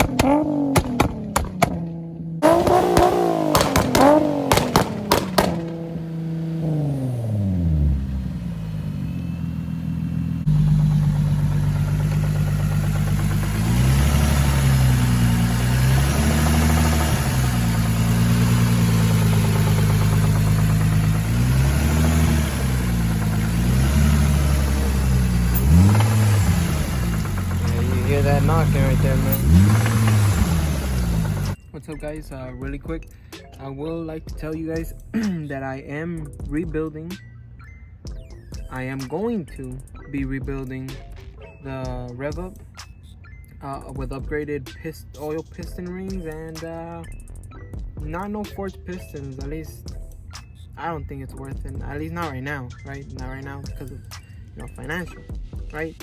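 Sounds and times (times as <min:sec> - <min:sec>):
sharp engine clicks: 0:00.0 - 0:07.0, 0:10.5 - 0:31.6
car engine revving: 0:00.0 - 0:31.6.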